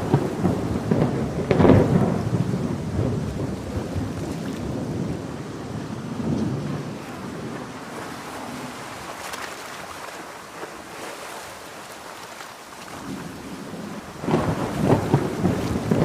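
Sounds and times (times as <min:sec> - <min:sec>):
thunder rolling: 0:00.0 - 0:09.0, 0:13.0 - 0:16.0
heavy rain: 0:00.0 - 0:16.0.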